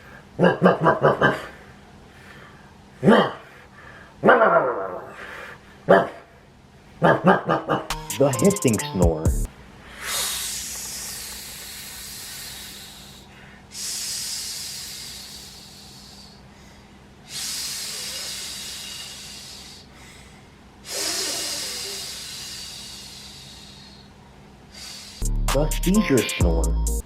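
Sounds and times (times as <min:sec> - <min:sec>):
person imitating hissing snore: 0:10.0 - 0:16.4, 0:17.3 - 0:20.0, 0:20.9 - 0:24.1, 0:24.8 - 0:25.7.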